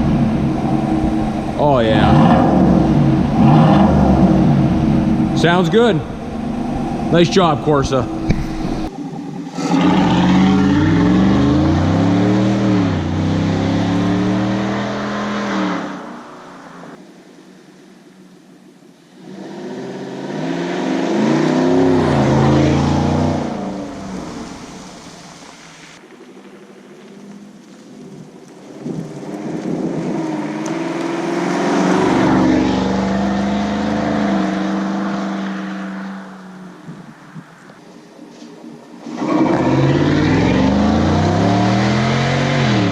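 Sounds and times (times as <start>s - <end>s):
deep car exhaust note: 0.0s - 8.9s
truck engine revving: 0.0s - 17.0s, 19.2s - 26.0s, 29.4s - 36.8s, 39.0s - 42.9s.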